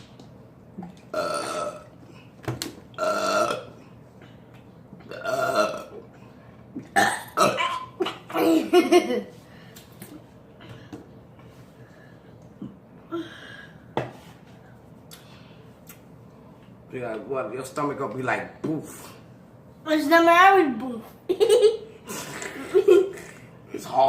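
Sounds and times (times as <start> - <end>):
person burping: 1.1 - 2.0, 3.0 - 3.8, 5.0 - 6.1, 6.8 - 8.6.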